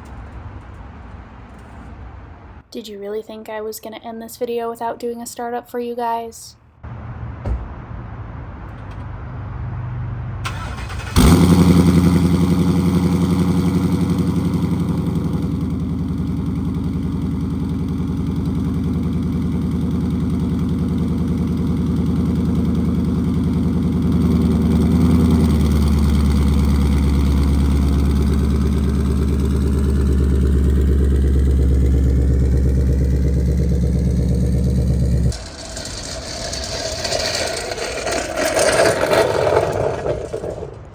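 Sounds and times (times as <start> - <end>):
car engine starting and idling: 6.9 - 38.3.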